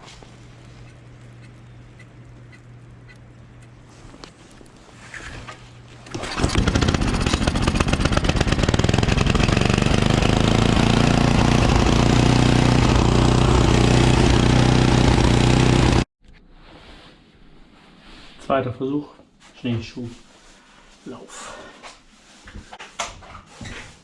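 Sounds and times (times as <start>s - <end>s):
snowblower engine running: 6.1s - 16.1s.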